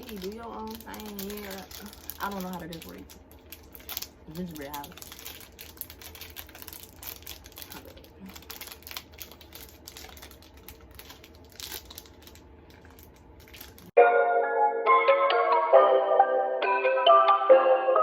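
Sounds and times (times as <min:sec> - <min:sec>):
plastic wrapping crinkling: 0:00.0 - 0:14.0
music with bell-like mallet notes: 0:14.0 - 0:18.0.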